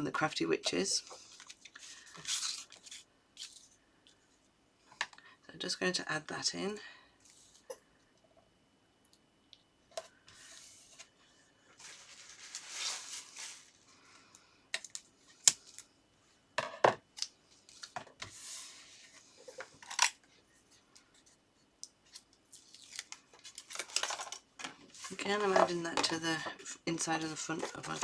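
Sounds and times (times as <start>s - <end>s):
paper and card rustling: 11.8s - 13.8s, 22.1s - 28.0s.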